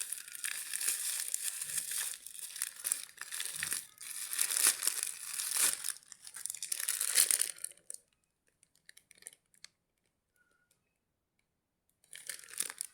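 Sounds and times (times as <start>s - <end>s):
packaging crinkling and tearing: 0.0s - 7.7s, 12.1s - 12.9s.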